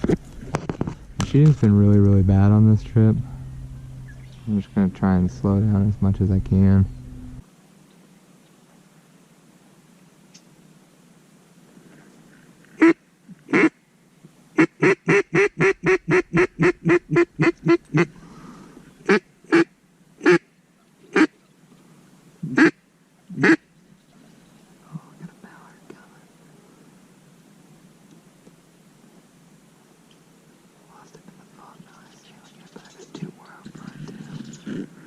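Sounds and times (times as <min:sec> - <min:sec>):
faint steady hiss: 0:00.0 - 0:35.0
duck quacking: 0:14.6 - 0:18.2, 0:19.0 - 0:20.4, 0:21.1 - 0:21.4, 0:22.5 - 0:22.7, 0:23.4 - 0:23.6.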